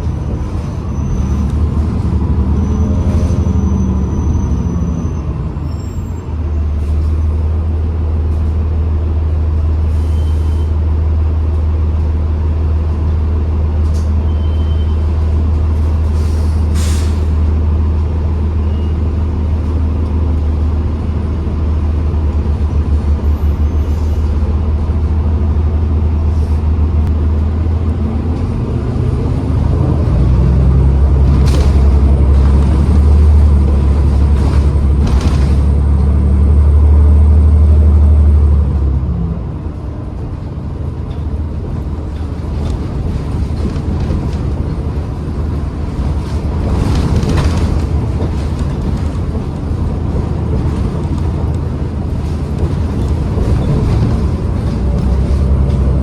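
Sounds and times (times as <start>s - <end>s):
bus drivetrain drone: 0.0s - 56.0s
air brake hisses: 16.2s - 17.4s.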